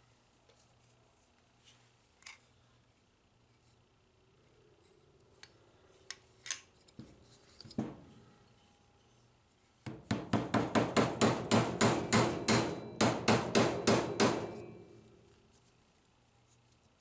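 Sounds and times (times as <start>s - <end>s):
rapid hammer blows on metal: 9.9s - 14.9s.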